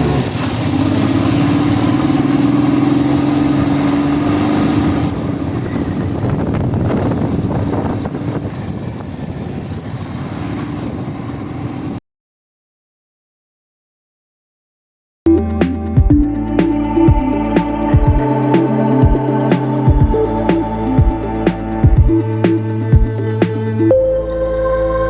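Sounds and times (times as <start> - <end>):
motorcycle engine running: 0.0 - 10.1, 15.3 - 23.6
road and wind noise: 0.0 - 12.0.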